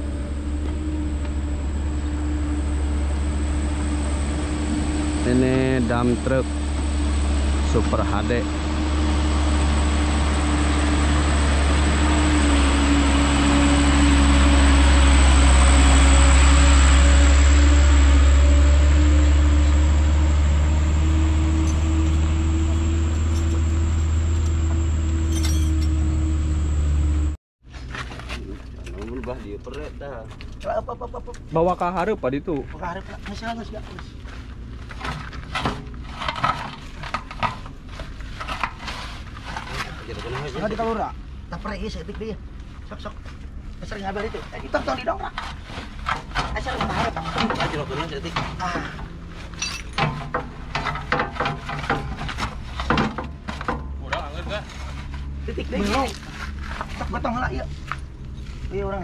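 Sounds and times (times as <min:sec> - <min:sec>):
dump truck diesel engine running: 0:00.0 - 0:27.4
sharp knocks and clatter: 0:34.8 - 0:40.6, 0:45.3 - 0:55.0.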